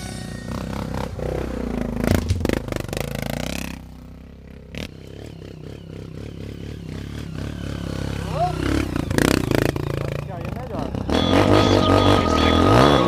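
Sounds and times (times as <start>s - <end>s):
motorcycle engine revving: 0.0s - 13.0s
clattering over rough ground: 1.8s - 3.2s.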